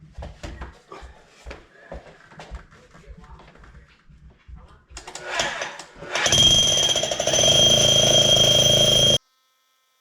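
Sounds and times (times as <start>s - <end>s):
hammer drill hammering: 5.1s - 9.2s.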